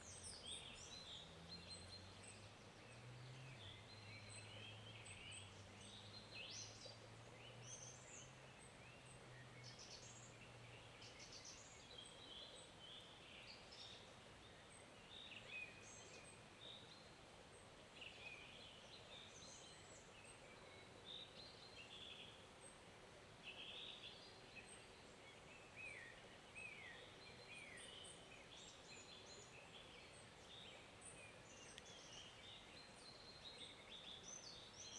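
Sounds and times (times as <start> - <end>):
small birds chirping: 23.4 - 34.9.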